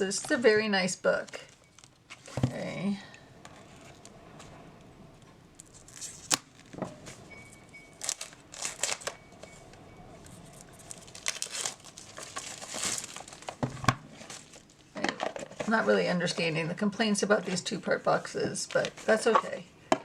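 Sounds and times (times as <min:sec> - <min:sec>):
packaging crinkling and tearing: 0:01.2 - 0:02.4, 0:05.6 - 0:06.8, 0:07.9 - 0:09.2, 0:10.5 - 0:14.9.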